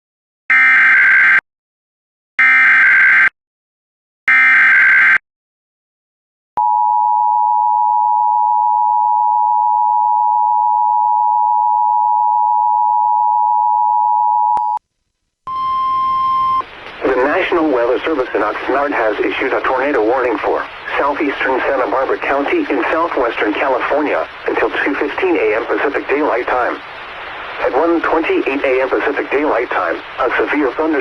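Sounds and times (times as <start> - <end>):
two-tone attention signal: 15.5 - 17.4.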